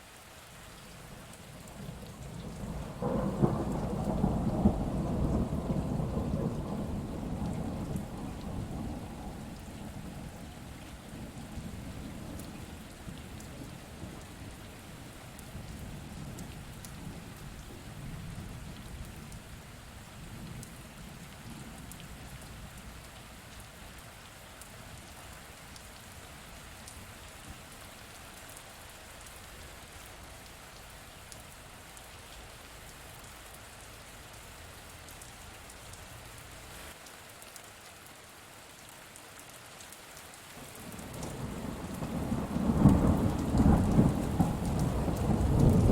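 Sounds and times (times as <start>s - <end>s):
steady rain falling: 0.0s - 45.9s
thunder rumbling: 1.9s - 10.4s, 40.9s - 45.9s.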